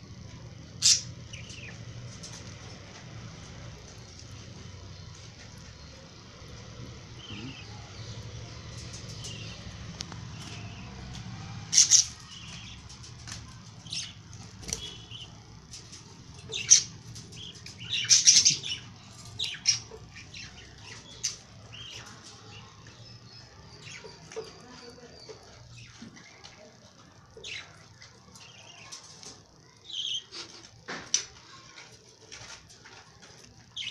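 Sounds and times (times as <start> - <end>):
lovebirds chirping shrilly: 0.8 - 1.8
small clicks and rustles: 30.5 - 33.9.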